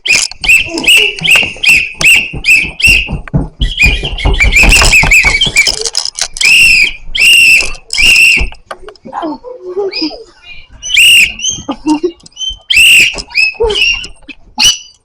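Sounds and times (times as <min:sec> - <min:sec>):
whistle toots and blasts: 0:00.0 - 0:08.6.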